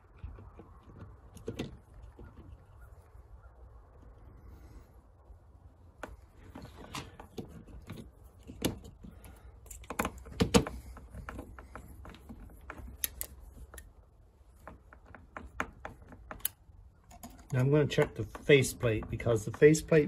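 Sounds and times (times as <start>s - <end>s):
screwdriver clicks and taps: 9.7s - 13.9s, 14.6s - 18.5s.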